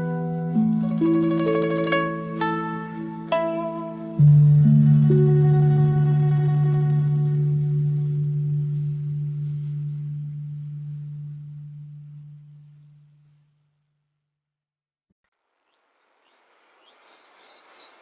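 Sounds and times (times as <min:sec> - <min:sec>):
plucked string chord: 0:00.0 - 0:13.3.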